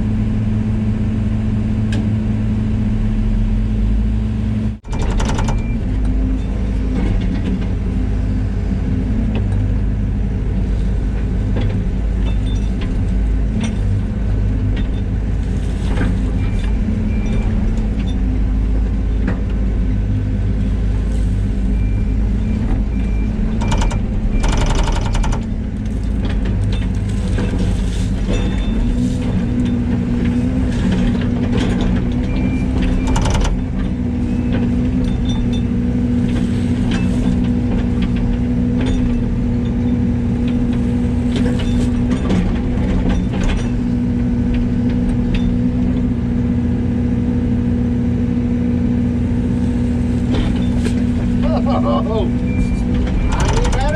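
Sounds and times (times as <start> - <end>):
diesel truck engine running: 0.0 - 53.9
sharp clicks: 23.6 - 25.5.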